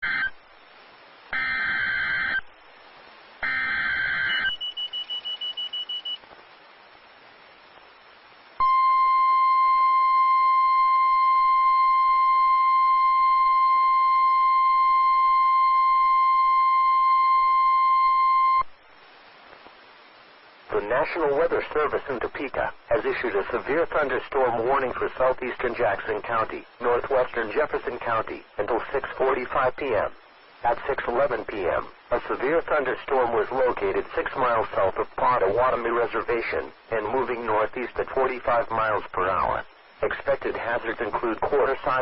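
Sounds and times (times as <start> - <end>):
data burst tones: 0.0 - 0.4, 1.3 - 2.5, 3.4 - 6.2, 8.6 - 18.7
steady warning alarm tone: 1.4 - 2.4, 3.4 - 6.2, 8.6 - 18.6
rapid high beeps: 3.4 - 6.2.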